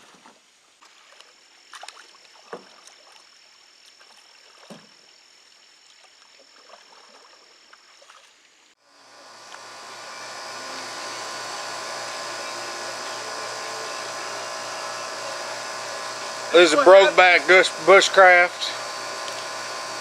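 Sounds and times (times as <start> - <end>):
water sloshing and splashing: 0.0 - 8.7
thin high whine: 8.8 - 20.0.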